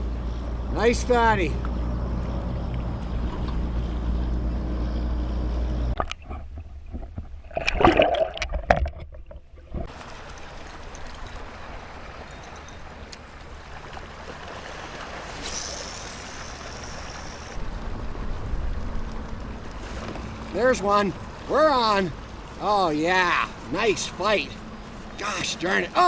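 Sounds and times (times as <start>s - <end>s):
low wind rumble: 0.0s - 7.9s, 8.6s - 26.0s
water splashing and gurgling: 0.0s - 26.0s
steady hiss: 15.2s - 17.7s.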